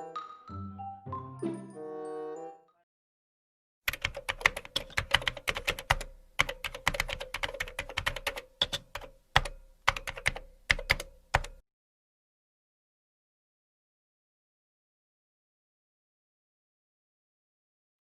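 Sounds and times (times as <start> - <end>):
typing on a keyboard: 3.9 - 11.6.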